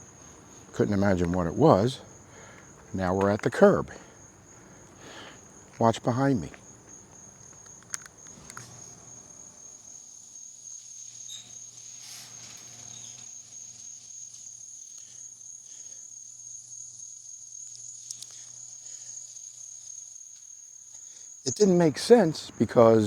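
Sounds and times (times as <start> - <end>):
crickets chirring: 0.0 - 23.0
faint clicks: 4.6 - 9.1, 17.6 - 18.6.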